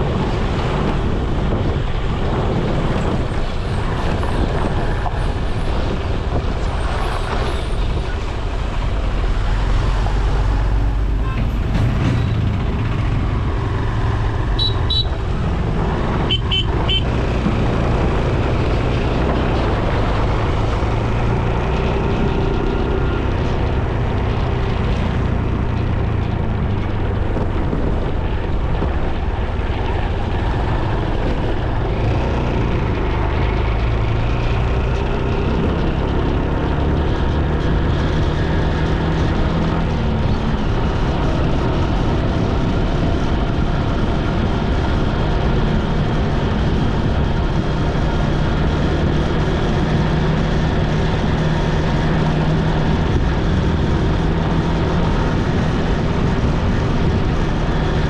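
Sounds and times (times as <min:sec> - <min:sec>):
wind on microphone: 0:00.0 - 0:58.0
horn toots: 0:14.5 - 0:15.2, 0:16.2 - 0:17.2.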